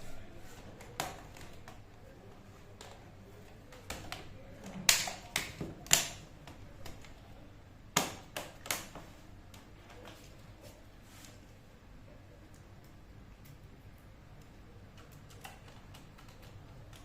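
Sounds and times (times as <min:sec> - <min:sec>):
plastic laptop parts clicking: 0:14.4 - 0:17.0.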